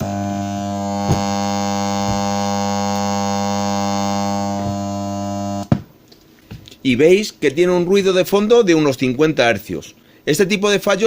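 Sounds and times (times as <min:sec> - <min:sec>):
loudspeaker mains hum: 0:00.0 - 0:06.0.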